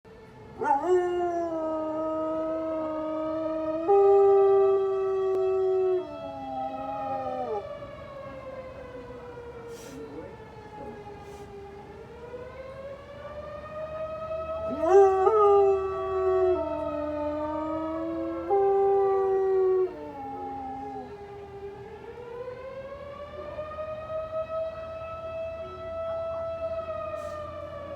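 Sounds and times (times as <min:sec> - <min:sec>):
warning siren wailing: 0:00.1 - 0:27.9
dog howling: 0:00.6 - 0:07.7, 0:14.6 - 0:21.3.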